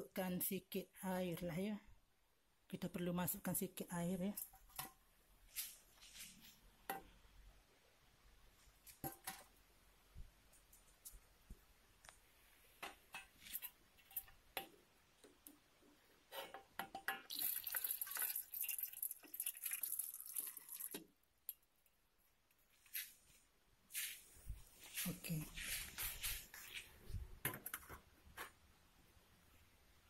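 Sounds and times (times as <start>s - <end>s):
small clicks and drips: 16.9s - 22.6s
water poured into metal pot: 17.2s - 21.1s.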